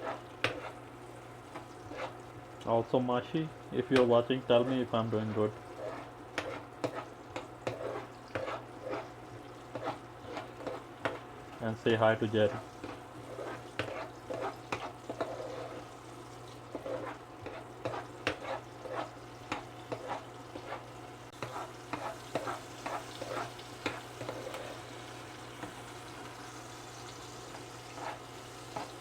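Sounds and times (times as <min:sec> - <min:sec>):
onions sizzling in oil: 0:03.2 - 0:29.0.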